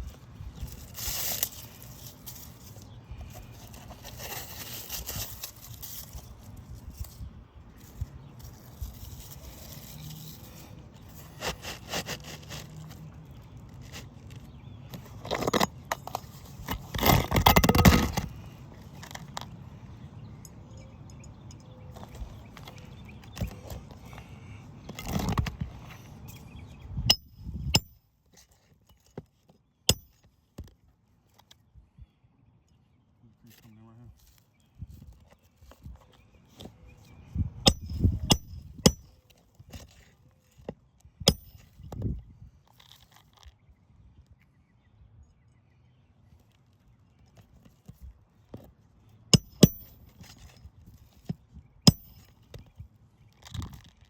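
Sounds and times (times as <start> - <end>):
hammer driving nails into shingles: 37.6 - 39.1, 41.3 - 41.6, 49.4 - 50.0, 51.9 - 52.3.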